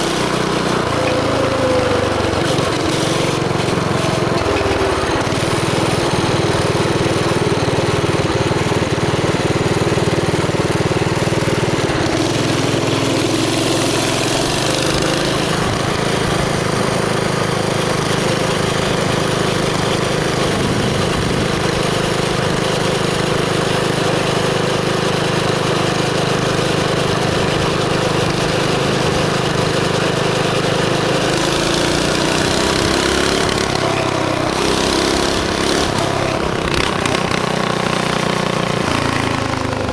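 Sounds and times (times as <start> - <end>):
small motorbike engine running: 0.0 - 39.9.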